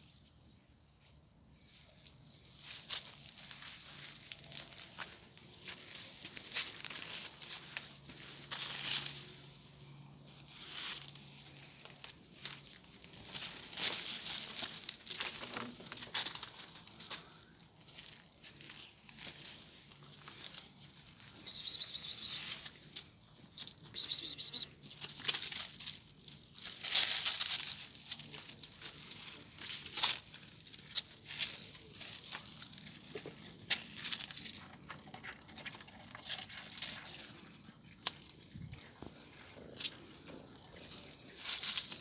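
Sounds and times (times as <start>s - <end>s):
scratching and rustling: 10.3s - 42.0s.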